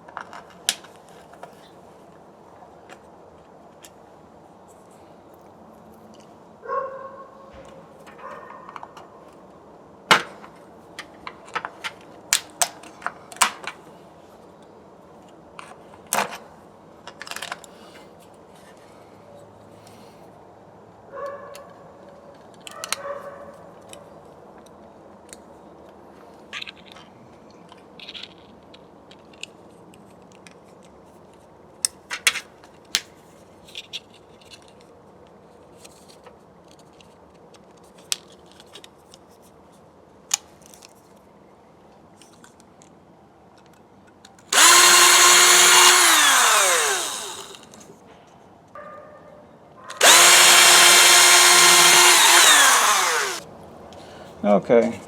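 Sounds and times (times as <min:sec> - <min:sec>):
hand tools clicking and knocking: 0:44.5 - 0:47.9, 0:49.9 - 0:53.4.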